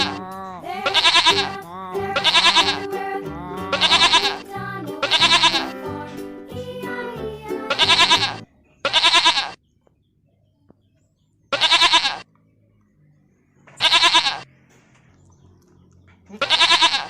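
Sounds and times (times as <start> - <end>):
goat bleating: 0.0 - 5.8, 7.7 - 9.6, 11.5 - 12.3, 13.8 - 14.5, 16.3 - 17.0.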